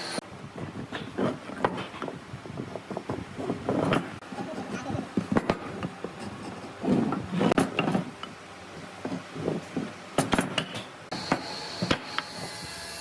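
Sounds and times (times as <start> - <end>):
steady hiss with high whine: 0.0 - 13.0
hard objects knocking and clinking: 2.8 - 12.0.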